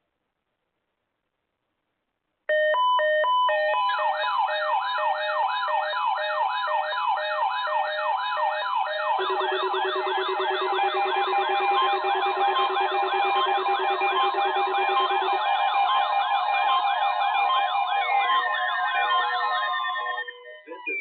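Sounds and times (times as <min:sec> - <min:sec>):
synthetic siren sweep: 0:02.6 - 0:21.0
steady electronic tones: 0:09.1 - 0:15.6.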